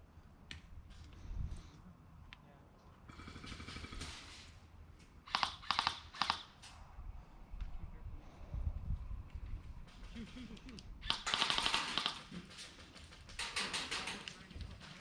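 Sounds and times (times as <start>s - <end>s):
airsoft guns firing bursts: 3.1s - 4.3s, 5.3s - 6.6s, 11.0s - 14.0s.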